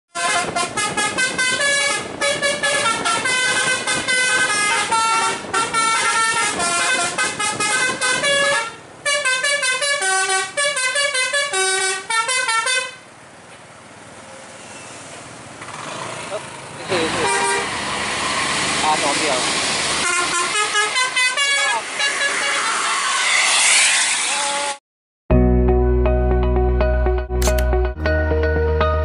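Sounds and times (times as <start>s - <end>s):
musical bus horn melody: 0.1s - 13.1s, 17.0s - 17.8s, 20.0s - 23.2s, 24.2s - 24.8s.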